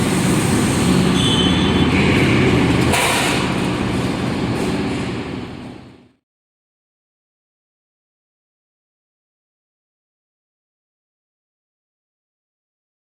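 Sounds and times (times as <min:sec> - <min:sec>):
roll forming machine running: 0:01.8 - 0:06.2.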